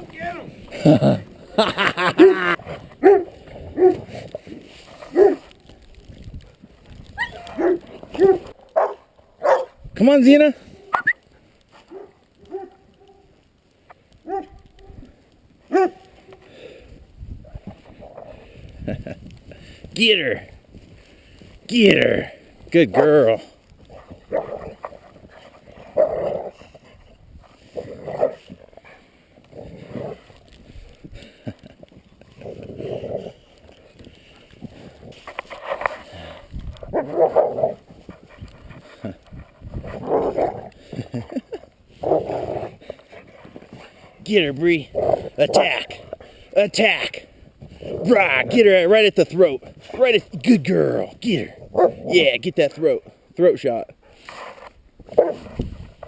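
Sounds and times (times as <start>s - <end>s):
dogs growling and yipping: 2.0s - 5.5s, 7.0s - 8.9s, 23.8s - 30.5s, 31.2s - 33.8s, 34.6s - 44.0s, 44.9s - 46.2s
dogs barking: 2.2s - 4.2s, 5.1s - 5.5s, 7.2s - 9.8s, 10.7s - 11.2s, 11.8s - 13.3s, 14.2s - 15.0s, 15.7s - 16.5s, 36.9s - 38.3s, 51.7s - 52.0s, 55.1s - 55.5s.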